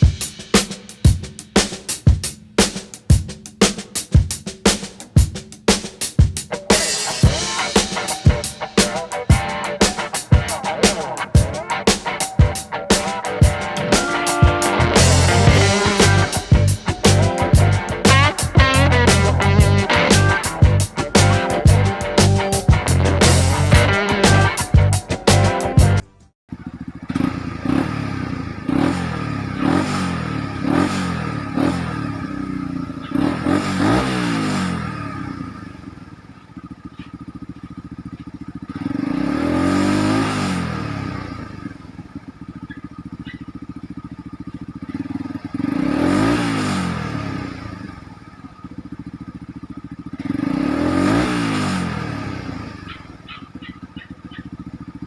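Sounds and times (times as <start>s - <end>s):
motorcycle engine revving: 0.0s - 55.0s
intro music: 6.5s - 26.3s.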